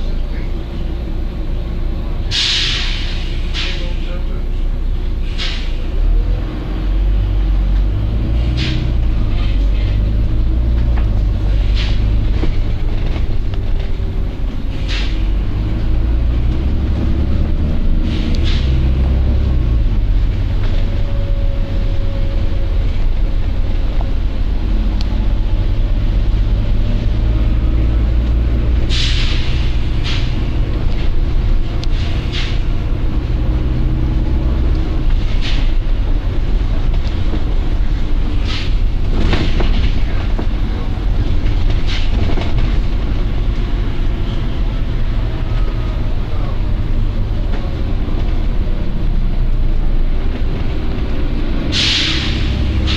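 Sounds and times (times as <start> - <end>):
bus engine rumbling: 0.0 - 52.9
compressed air hisses: 2.3 - 3.8, 28.9 - 30.4, 51.7 - 52.9.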